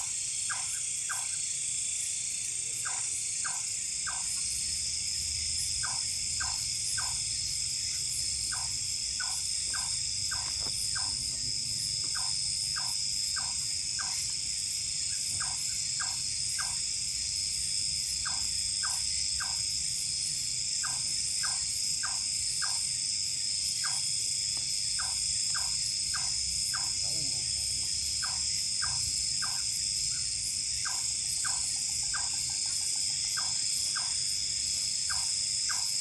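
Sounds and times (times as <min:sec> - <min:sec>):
crickets trilling: 0:00.0 - 0:36.0
short insect chirps: 0:00.0 - 0:36.0.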